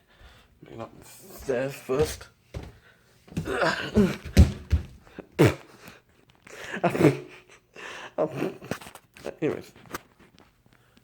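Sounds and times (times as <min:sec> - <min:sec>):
thumps: 0:02.0 - 0:05.0.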